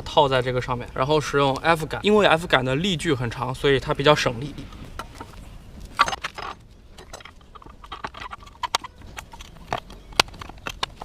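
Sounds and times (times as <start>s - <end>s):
metallic clicks and knocks: 5.0s - 11.0s.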